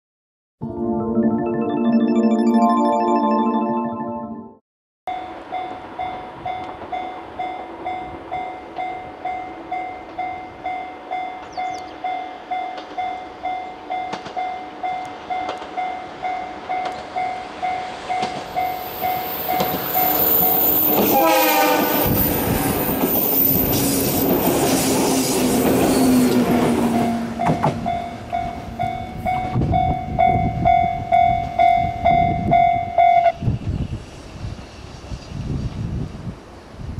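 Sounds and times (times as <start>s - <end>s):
level crossing bell ringing: 0.6s - 4.6s
train horn: 20.8s - 22.6s.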